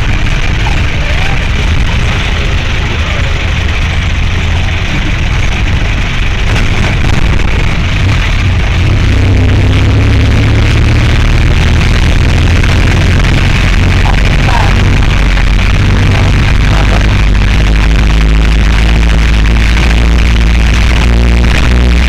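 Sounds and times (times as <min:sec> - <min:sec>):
road noise: 0:00.0 - 0:22.0
vehicle engine rumble: 0:00.0 - 0:22.0.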